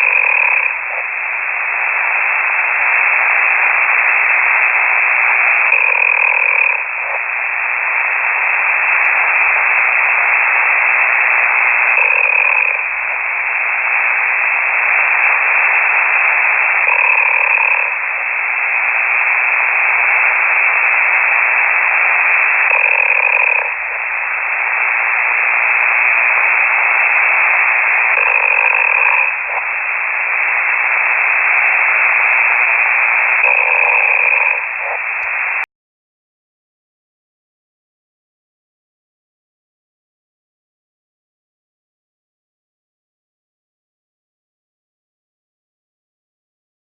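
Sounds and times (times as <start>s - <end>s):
person snoring over radio: 0.0s - 35.7s
radio hiss: 0.0s - 35.7s.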